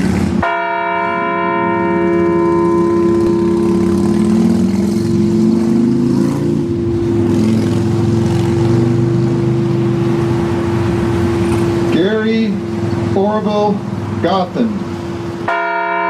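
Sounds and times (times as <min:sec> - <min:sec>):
engine running: 0:00.0 - 0:16.0
large bell ringing: 0:00.4 - 0:05.2, 0:15.4 - 0:16.0.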